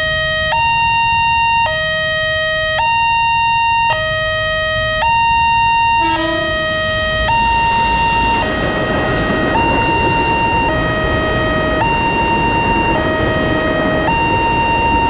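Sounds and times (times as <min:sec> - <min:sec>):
level crossing warning siren: 0:00.0 - 0:15.0
low rumble: 0:06.0 - 0:15.0.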